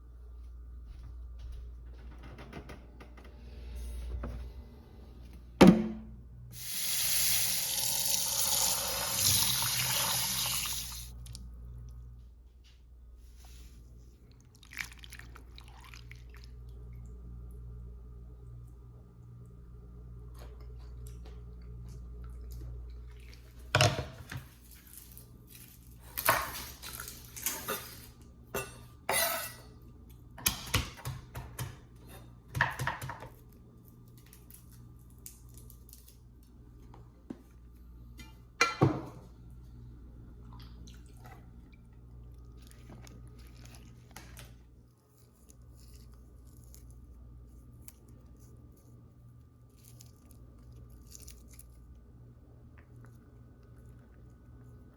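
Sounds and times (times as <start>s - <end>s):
low steady hum: 0.0s - 54.9s
utensils and dishes clattering: 27.4s - 29.7s.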